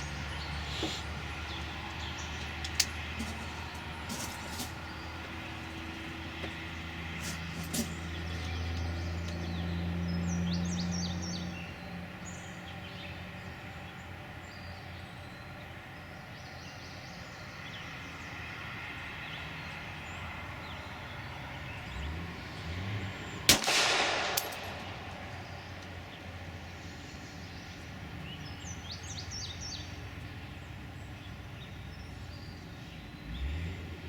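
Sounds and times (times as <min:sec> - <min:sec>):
pistol shot echoing: 0:23.5 - 0:26.0.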